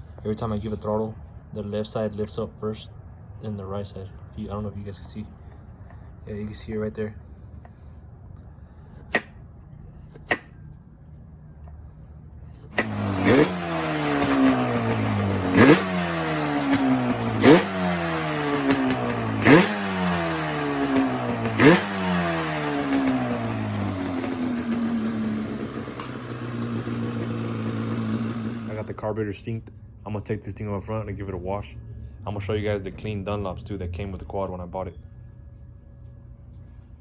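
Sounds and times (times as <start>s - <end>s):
two-stroke engine revving: 12.6s - 29.0s.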